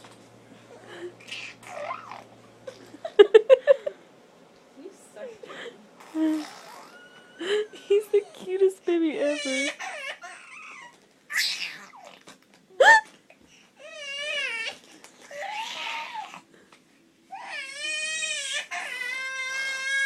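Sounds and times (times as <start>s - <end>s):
baby squealing: 1.2s - 2.3s, 6.3s - 7.8s, 9.4s - 12.2s, 14.0s - 16.4s
baby high-pitched held cries: 6.4s - 8.5s, 9.2s - 12.2s, 13.8s - 16.4s, 17.3s - 20.0s.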